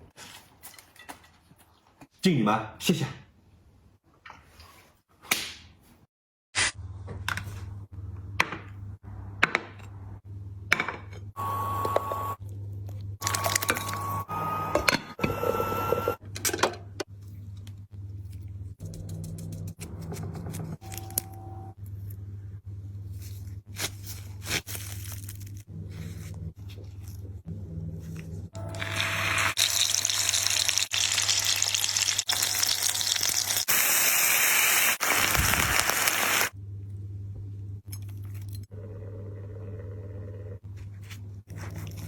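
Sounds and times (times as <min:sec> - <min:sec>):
low hum: 0:25.1 - 0:29.6.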